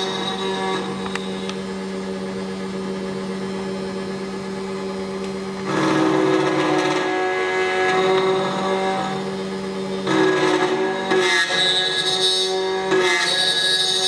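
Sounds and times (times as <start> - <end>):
key cutting machine running: 0.0 - 14.0.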